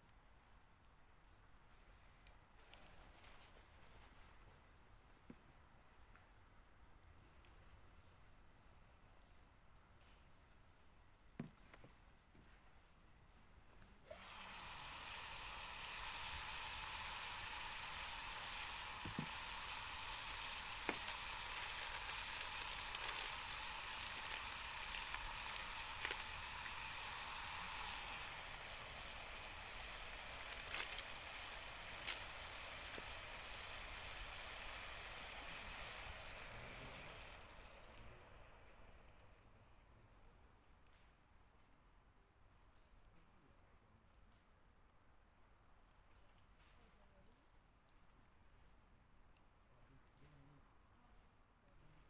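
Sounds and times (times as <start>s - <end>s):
food sizzling in a pan: 14.1s - 38.4s
oil pops and crackles: 14.1s - 39.3s.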